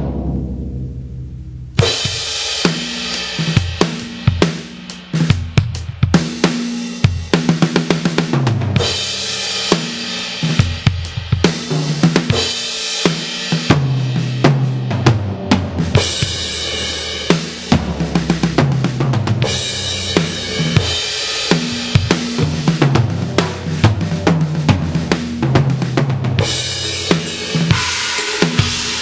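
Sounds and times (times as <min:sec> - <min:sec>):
tom fills: 0:00.0 - 0:04.2
crash cymbal wash: 0:00.0 - 0:04.8, 0:26.5 - 0:29.0
kick and snare drum beat: 0:01.7 - 0:29.0.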